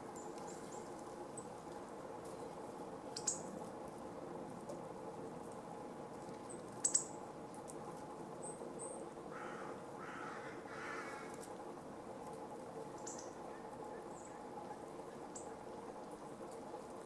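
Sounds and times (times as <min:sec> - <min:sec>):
steady low hum: 0:00.0 - 0:17.0
small bird chirping: 0:03.1 - 0:03.5, 0:06.5 - 0:07.2, 0:12.9 - 0:14.4
distant crow cawing: 0:09.3 - 0:11.4.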